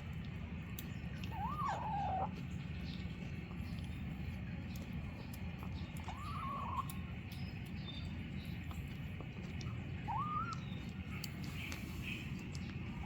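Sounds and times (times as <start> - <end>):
kitten squeaky calls: 1.1 - 2.4, 5.9 - 7.2, 9.7 - 11.0.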